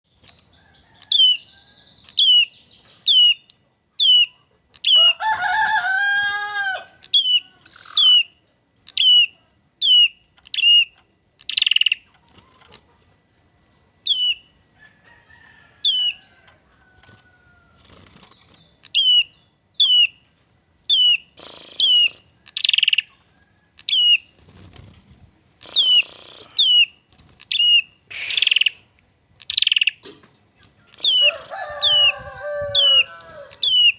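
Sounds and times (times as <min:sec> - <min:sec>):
lower multi-tone bird call: 0:00.4 - 0:12.1, 0:18.9 - 0:20.3, 0:20.9 - 0:23.2, 0:25.6 - 0:30.0, 0:30.9 - 0:33.9
short noisy bursts: 0:28.1 - 0:28.8
songbird whistling high notes: 0:28.1 - 0:28.8.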